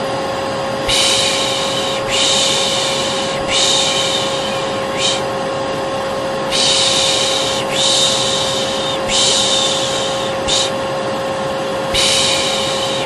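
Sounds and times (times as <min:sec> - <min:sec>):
vacuum cleaner hum: 0:00.0 - 0:13.0
person shushing: 0:00.9 - 0:05.3, 0:06.5 - 0:10.8, 0:11.9 - 0:13.0.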